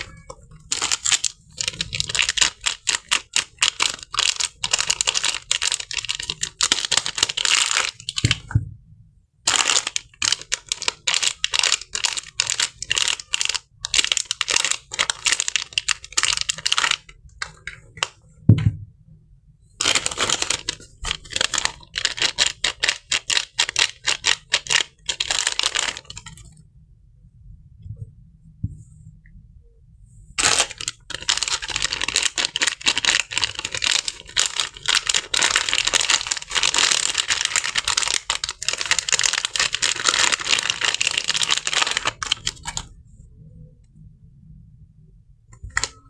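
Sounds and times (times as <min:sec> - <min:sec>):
wrapper crinkling by hand: 0:00.0 - 0:08.5, 0:09.5 - 0:17.8, 0:19.8 - 0:26.5, 0:30.4 - 0:42.9.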